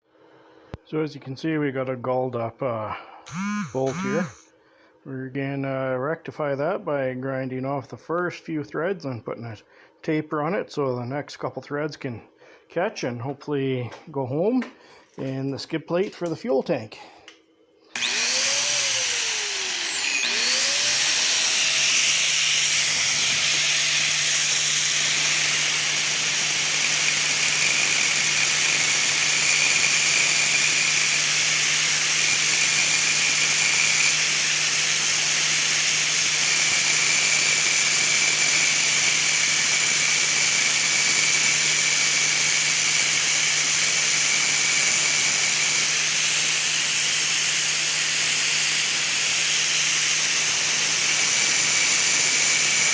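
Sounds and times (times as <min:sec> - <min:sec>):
electric grinder grinding metal: 0:03.3 - 0:04.4, 0:18.0 - 0:52.9.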